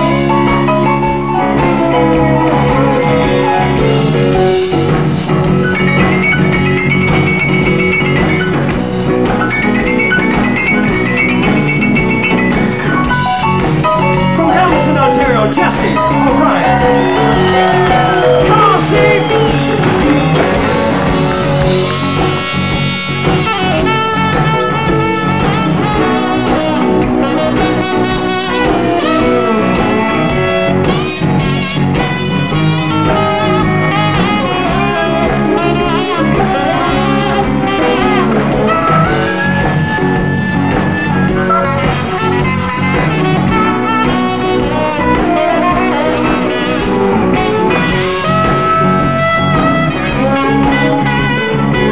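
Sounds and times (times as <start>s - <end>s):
blues-rock band playing: 0.0s - 51.9s
lead guitar bending notes: 0.0s - 51.9s.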